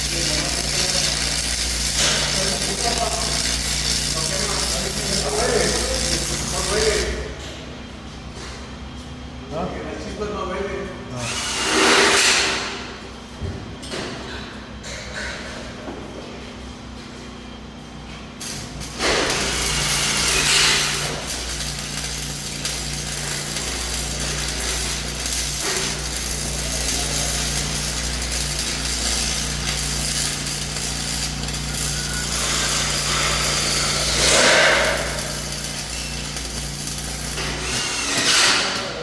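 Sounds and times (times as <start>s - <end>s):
power tool cutting metal: 0.0s - 7.2s, 18.9s - 38.8s.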